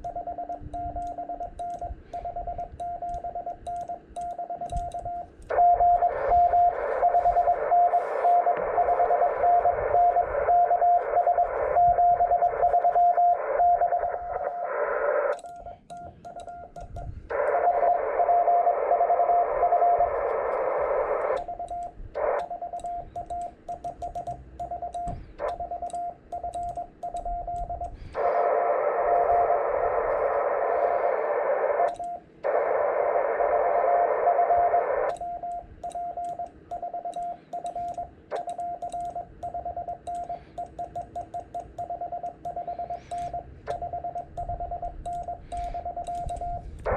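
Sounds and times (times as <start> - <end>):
morse code tone: 0.0 - 46.9
receiver hiss: 0.0 - 46.9.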